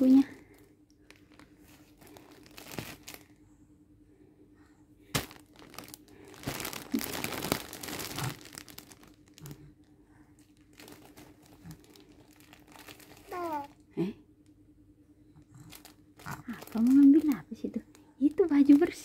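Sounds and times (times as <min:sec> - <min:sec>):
plastic wrapping crinkling: 0:01.0 - 0:03.3, 0:05.1 - 0:09.7, 0:10.4 - 0:13.8, 0:15.5 - 0:19.0.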